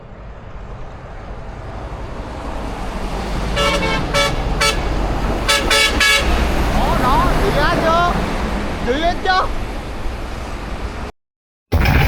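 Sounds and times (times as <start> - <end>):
vehicle engine rumble: 0.0 - 11.1
truck horn short toots: 3.6 - 4.9, 5.5 - 6.4.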